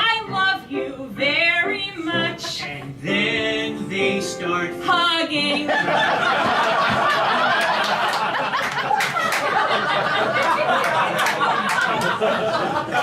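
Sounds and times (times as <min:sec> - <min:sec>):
group of people laughing: 0:05.6 - 0:13.0.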